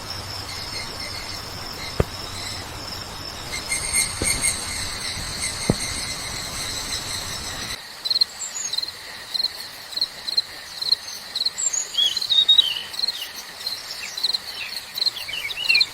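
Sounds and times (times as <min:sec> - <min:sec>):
bird calling: 0:00.0 - 0:07.8, 0:11.7 - 0:13.4
insects chirping: 0:00.0 - 0:15.9.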